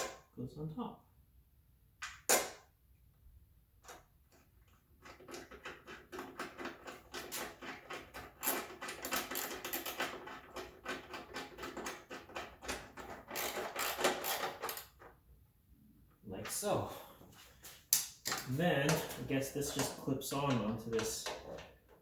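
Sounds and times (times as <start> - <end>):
ratcheting driver clicking rapidly: 13.3 - 14.9.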